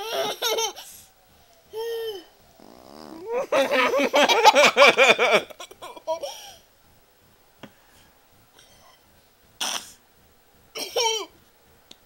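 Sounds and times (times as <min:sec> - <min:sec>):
child's wavering vocal sound: 0:01.6 - 0:03.6.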